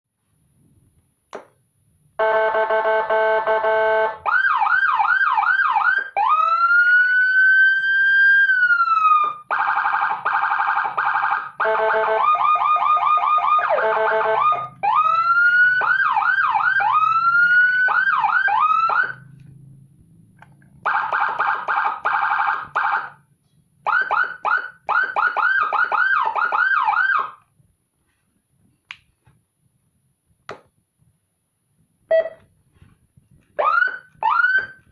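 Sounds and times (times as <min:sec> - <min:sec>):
electronic siren: 0:02.2 - 0:19.8, 0:20.8 - 0:23.2, 0:23.8 - 0:27.4, 0:33.6 - 0:34.9.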